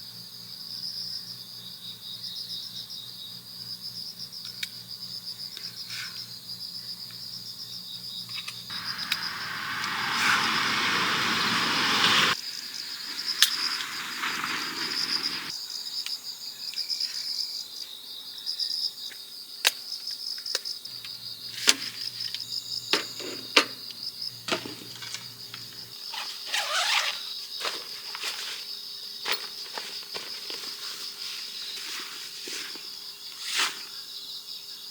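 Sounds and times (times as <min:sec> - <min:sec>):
crickets chirping: 0:00.1 - 0:34.9
rustling: 0:08.7 - 0:15.5.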